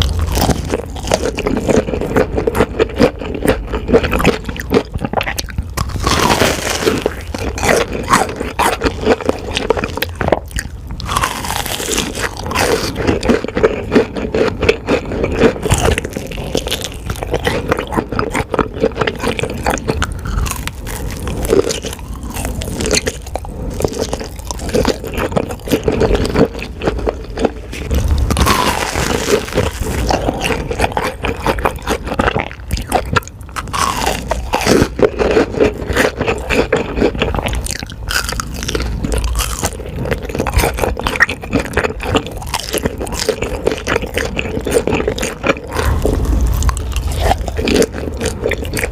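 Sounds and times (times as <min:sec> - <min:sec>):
crunchy chewing: 0:00.0 - 0:48.9.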